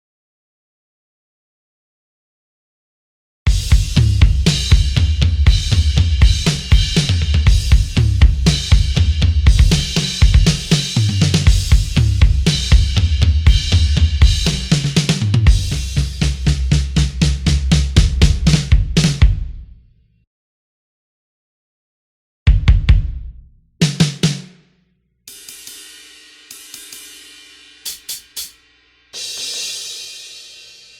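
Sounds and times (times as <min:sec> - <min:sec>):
rock drum kit groove: 0:03.5 - 0:19.8, 0:22.5 - 0:24.6, 0:25.3 - 0:30.9
sustained low bass: 0:03.7 - 0:18.9.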